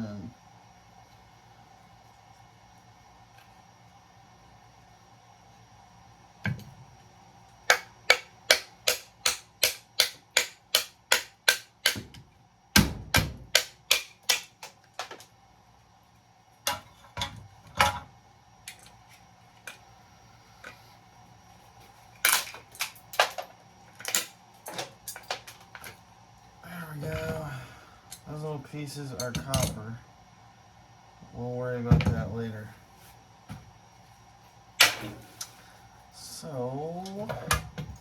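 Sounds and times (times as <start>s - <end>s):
hammer striking metal: 7.7s - 12.0s.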